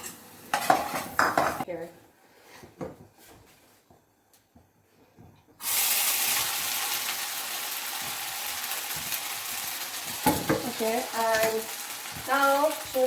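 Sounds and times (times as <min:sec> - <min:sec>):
food sizzling in hot oil: 0:05.6 - 0:13.0.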